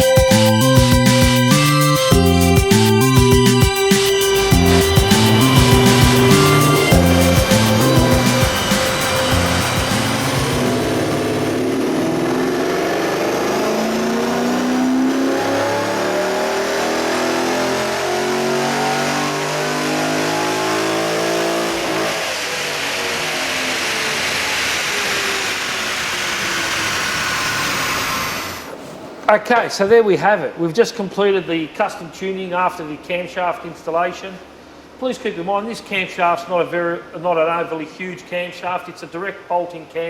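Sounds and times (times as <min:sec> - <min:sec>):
engine revving under load: 0:00.0 - 0:29.0.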